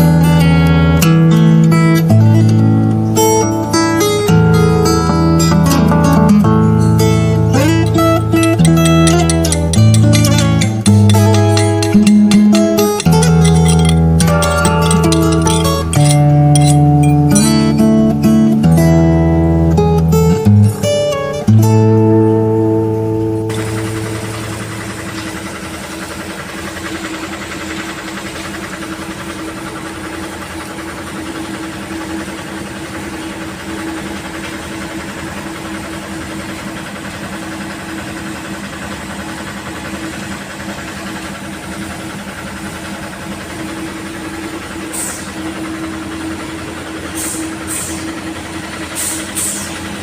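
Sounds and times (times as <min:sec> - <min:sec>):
engine running steadily: 0:00.0 - 0:50.0
short hissing sounds: 0:49.0 - 0:49.8.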